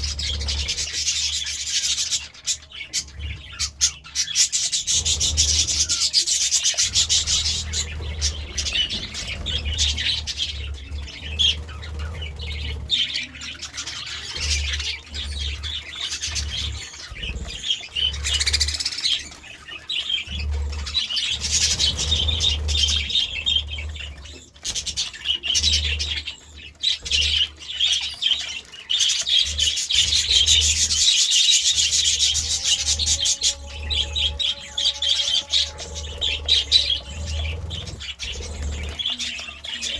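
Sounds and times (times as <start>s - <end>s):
budgerigars chirping and warbling: 0.0s - 39.9s
low hum: 31.6s - 39.2s.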